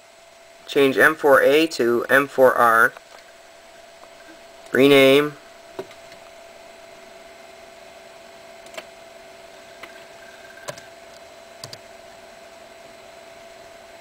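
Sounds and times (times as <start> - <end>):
faint electrical hum: 0.0 - 14.0
keyboard and mouse clicks: 8.6 - 8.9, 10.6 - 10.9, 11.6 - 11.8.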